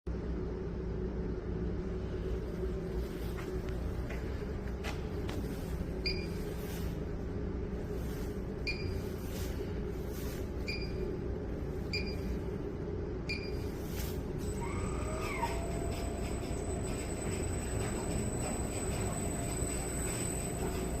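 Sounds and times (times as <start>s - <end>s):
washing machine rumbling: 0.1s - 21.0s.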